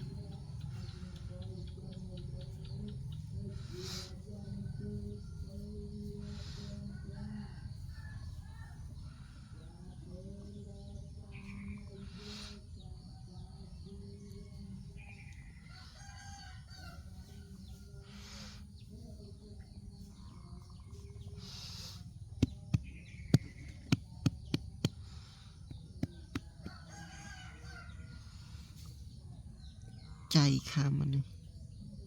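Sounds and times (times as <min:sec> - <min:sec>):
rooster crowing: 0:06.9 - 0:08.8, 0:15.7 - 0:17.3, 0:26.3 - 0:28.1.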